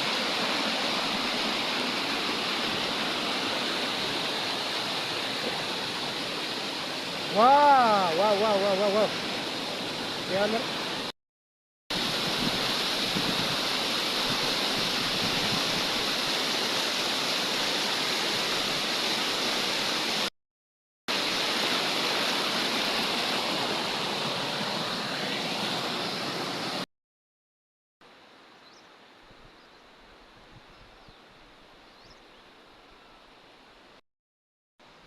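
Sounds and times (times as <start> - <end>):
waterfall rushing: 0.0 - 11.1, 11.9 - 20.3, 21.1 - 26.8.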